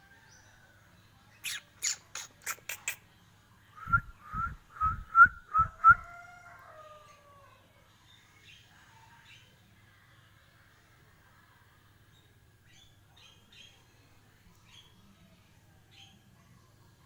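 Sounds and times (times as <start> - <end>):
bird whistling song: 1.4 - 3.0, 3.8 - 6.1
low thumps: 3.8 - 6.0.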